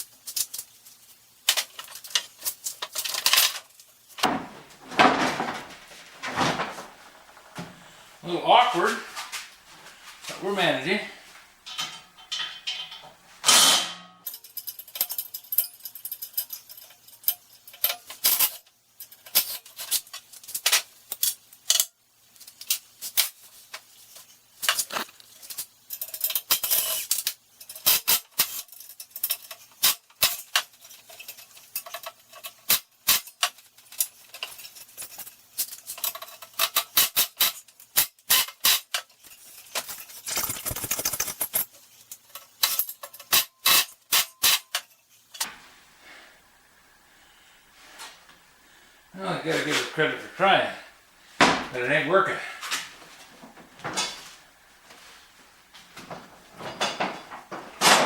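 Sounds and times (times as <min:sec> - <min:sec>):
metal clicks and clanks: 0:01.4 - 0:07.6, 0:11.7 - 0:45.5.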